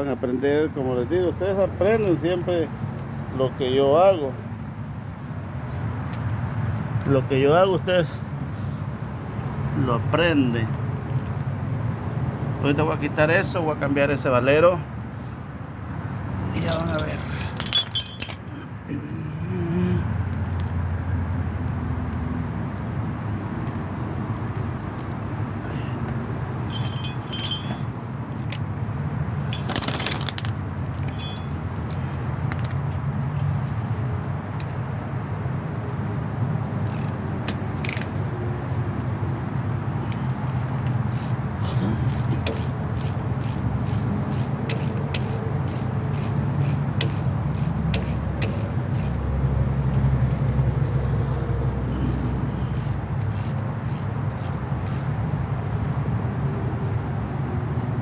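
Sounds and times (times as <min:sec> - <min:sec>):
metallic clicks of hand tools: 0:36.8 - 0:38.1, 0:40.1 - 0:49.2, 0:52.0 - 0:55.2.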